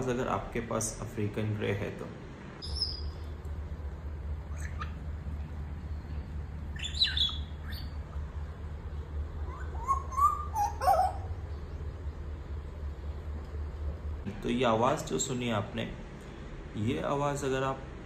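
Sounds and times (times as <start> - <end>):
steady low hum: 0.0 - 18.0
parrot whistling and chirping: 2.6 - 3.3, 4.5 - 5.1, 6.7 - 8.2, 9.4 - 11.5.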